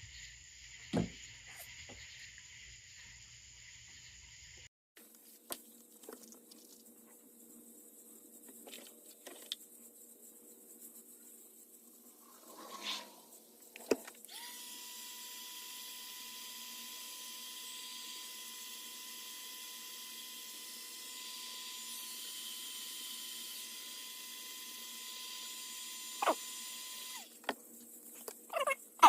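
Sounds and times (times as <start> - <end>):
power tool high-pitched whine: 14.2 - 27.4.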